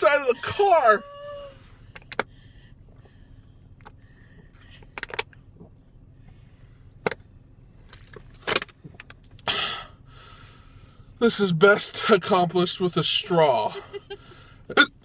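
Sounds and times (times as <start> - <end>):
man hiccuping: 0.0 - 1.6, 14.7 - 15.0
low steady hum: 0.0 - 15.0.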